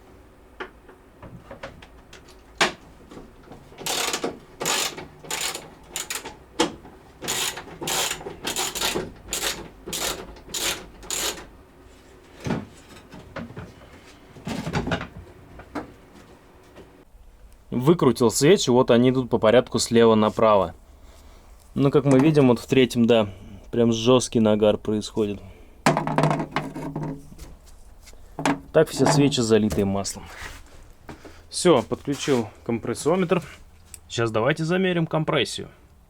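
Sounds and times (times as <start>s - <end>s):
ratchet wrench clicking: 3.8s - 6.4s, 7.2s - 11.5s.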